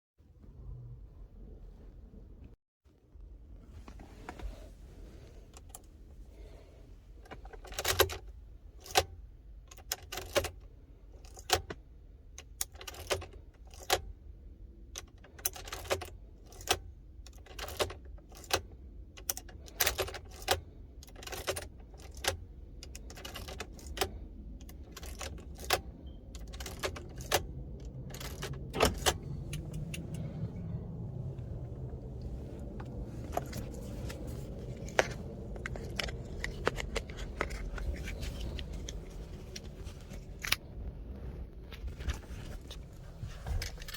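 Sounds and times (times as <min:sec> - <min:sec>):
low steady hum: 0:00.2 - 0:43.9
car keys jangling and clicking: 0:07.2 - 0:14.1, 0:14.9 - 0:30.6, 0:31.4 - 0:40.7, 0:41.9 - 0:43.9.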